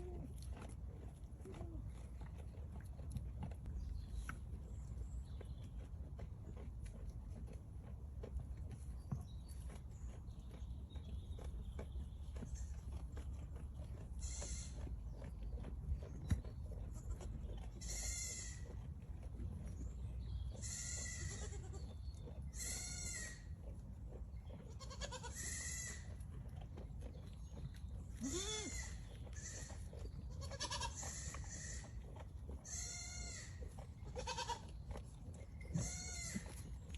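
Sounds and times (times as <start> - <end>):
young goats bleating: 14.2 - 14.8, 16.9 - 18.7, 20.6 - 23.6, 24.6 - 26.1, 28.2 - 34.8, 35.7 - 36.7.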